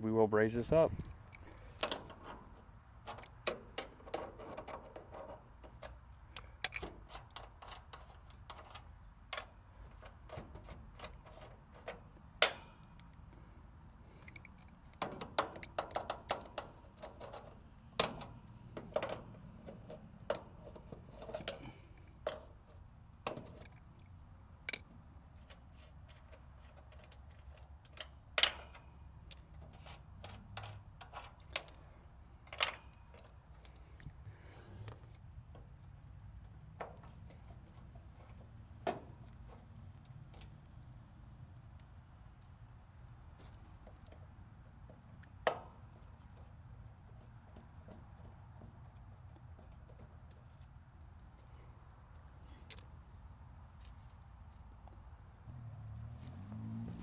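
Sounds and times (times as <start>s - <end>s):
metal tools clinking: 28.4s - 31.4s, 53.8s - 54.7s.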